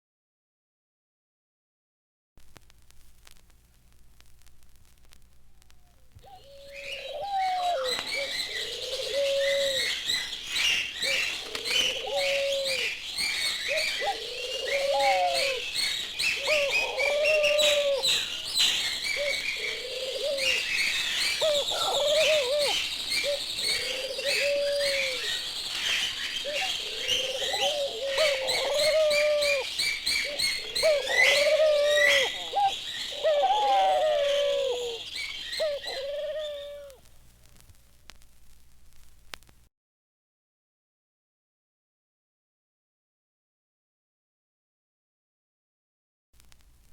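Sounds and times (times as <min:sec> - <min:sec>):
small birds chirping: 0:05.6 - 0:37.0
pigeons cooing: 0:06.2 - 0:37.0.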